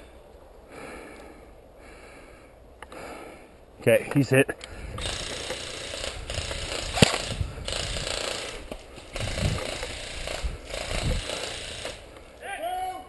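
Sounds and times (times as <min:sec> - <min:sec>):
airsoft gun firing bursts: 0:05.0 - 0:12.0
sharp crack: 0:05.3 - 0:08.9.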